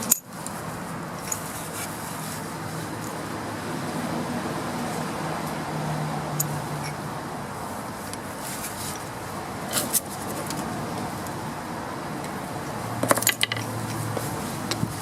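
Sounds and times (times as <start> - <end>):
metallic clinks: 6.3 - 7.0.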